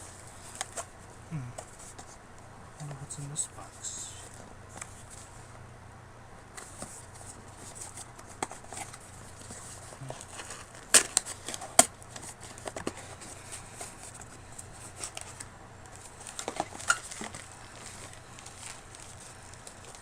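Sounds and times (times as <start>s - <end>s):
packaging taps clicks and rustles: 7.8s - 20.0s.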